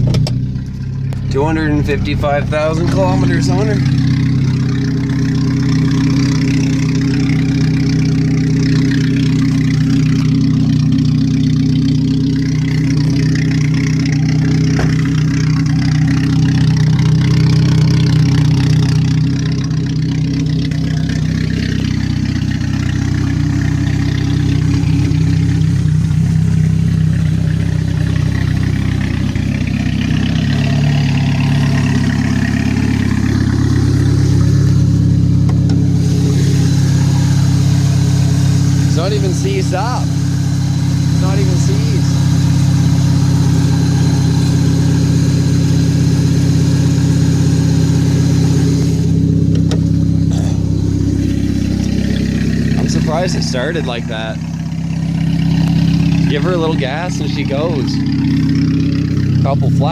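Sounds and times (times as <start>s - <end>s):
car engine idling: 0.0s - 59.9s.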